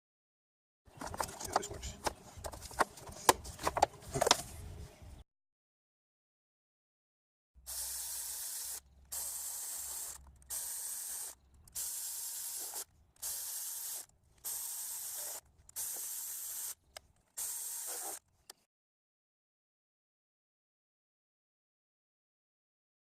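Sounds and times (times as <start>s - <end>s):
hissing bursts: 7.6s - 16.8s, 17.4s - 18.2s.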